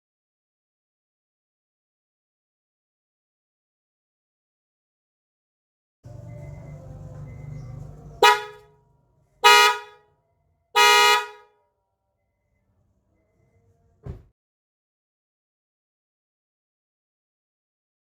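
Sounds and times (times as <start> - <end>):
car horn honking: 6.1 - 8.8, 9.4 - 10.1, 10.8 - 11.6.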